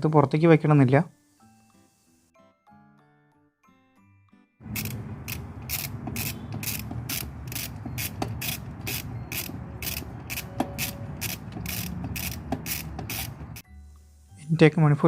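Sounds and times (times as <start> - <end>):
ratchet wrench clicking: 4.6 - 13.6.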